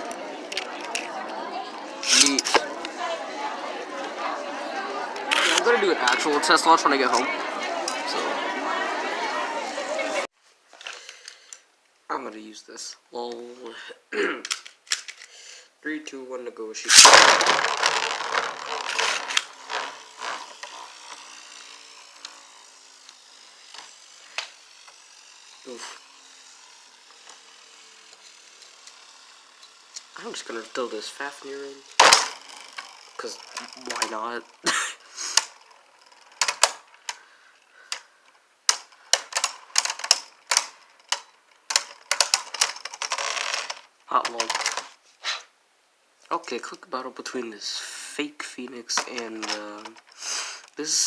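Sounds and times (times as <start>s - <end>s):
spinning top scraping surface: 0.0s - 10.3s, 16.9s - 38.1s, 38.7s - 45.0s, 48.9s - 51.0s.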